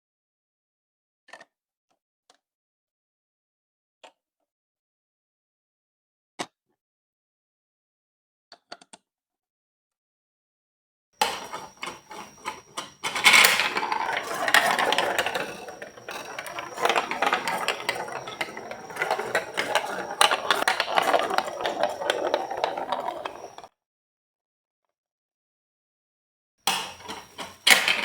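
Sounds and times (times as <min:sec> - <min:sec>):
clicks: 0:11.2 - 0:23.7
marbles rattling down plastic track: 0:11.2 - 0:23.7, 0:26.7 - 0:28.0.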